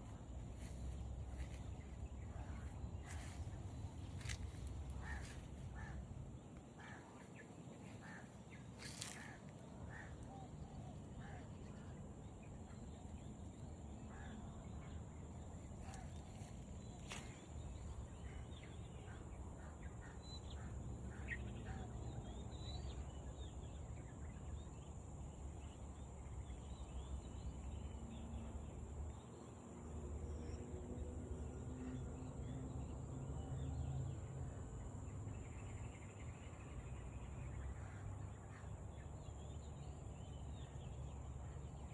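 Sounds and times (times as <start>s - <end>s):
faint bird calls: 0.0s - 11.9s.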